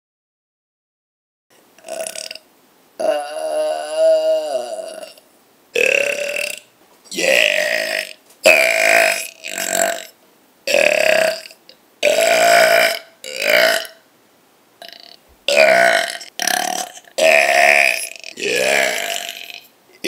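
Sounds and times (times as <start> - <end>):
person burping loudly: 1.8 - 2.4, 3.0 - 5.2, 5.8 - 14.0, 14.8 - 19.7.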